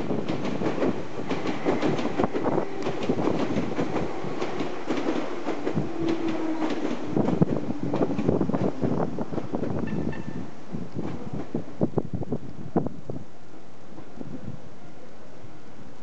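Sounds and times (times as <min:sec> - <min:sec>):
train wheels clattering on rails: 0:00.0 - 0:11.9.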